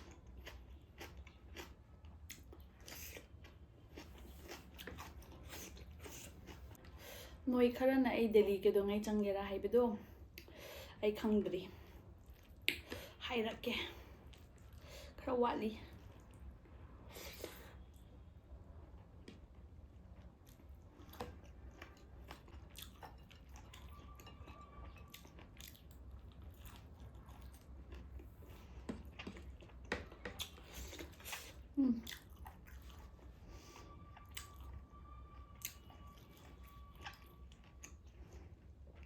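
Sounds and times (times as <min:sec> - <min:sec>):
person chewing crunchy food: 0:00.0 - 0:07.0, 0:20.4 - 0:39.0.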